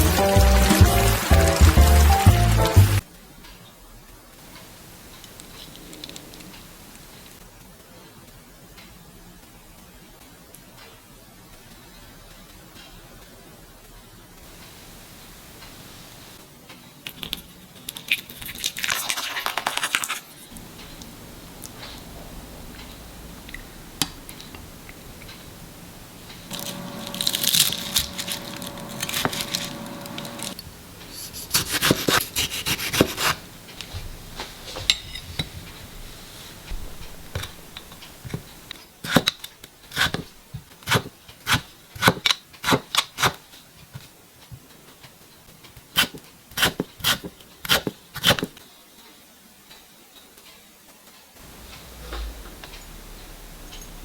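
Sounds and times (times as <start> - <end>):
rustling and scraping on cutting board: 26.3 - 39.3
knife chopping on wooden board: 31.5 - 33.4.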